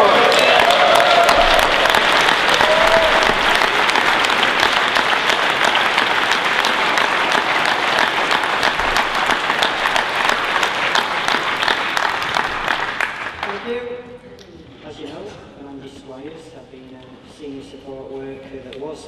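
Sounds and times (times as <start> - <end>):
audience applauding: 0.0 - 13.7.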